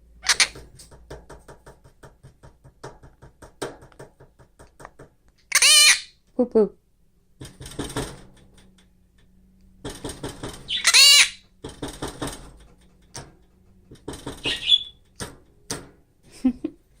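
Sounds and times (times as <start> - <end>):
parrot squawking: 0.2 - 0.6, 5.5 - 6.2, 10.7 - 11.4, 14.4 - 14.9
rustling and fluttering: 9.8 - 16.4.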